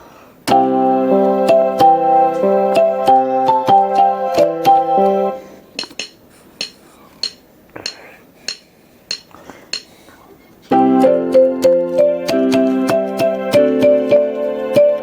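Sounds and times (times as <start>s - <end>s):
electronic keyboard percussion ticks: 0.5s - 5.2s, 10.7s - 15.0s
keyboard chord and melody: 0.5s - 5.5s, 10.7s - 15.0s.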